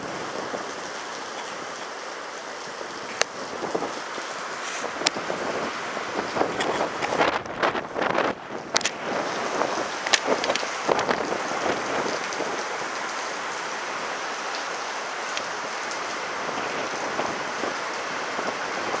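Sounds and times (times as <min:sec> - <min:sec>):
steady rain falling: 0:00.0 - 0:19.0.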